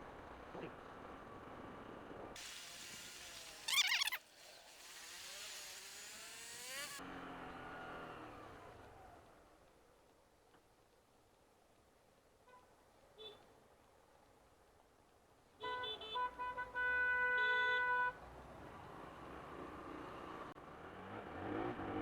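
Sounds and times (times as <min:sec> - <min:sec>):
traffic noise: 0:00.0 - 0:22.0
engine accelerating: 0:05.3 - 0:09.5, 0:19.2 - 0:22.0.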